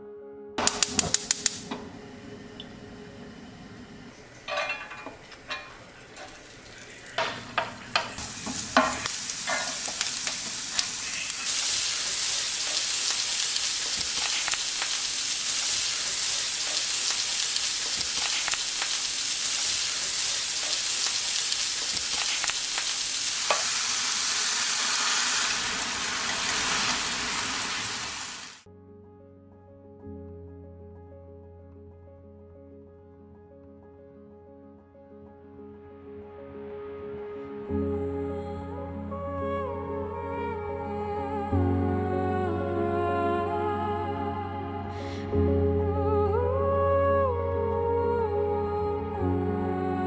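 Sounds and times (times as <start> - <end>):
food sizzling in a frying pan: 0.6 - 1.8, 4.2 - 28.7
utensil clacking against pan: 4.5 - 11.4.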